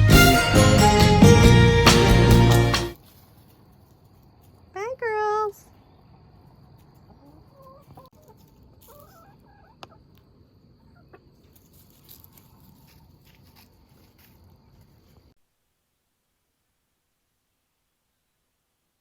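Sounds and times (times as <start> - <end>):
chickens clucking: 6.1 - 13.0.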